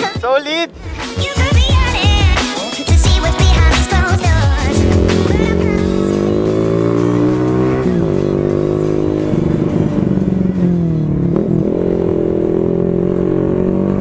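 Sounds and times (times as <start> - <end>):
loud motorcycle engine revving: 4.3 - 14.0.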